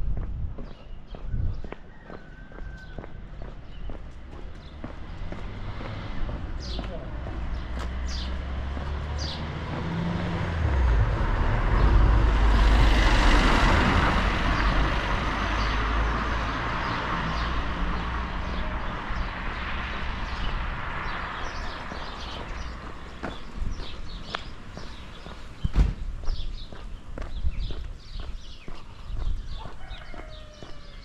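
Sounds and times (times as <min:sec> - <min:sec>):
wind rumble on microphone: 0:00.0 - 0:31.0
vehicle driving past: 0:04.1 - 0:25.3.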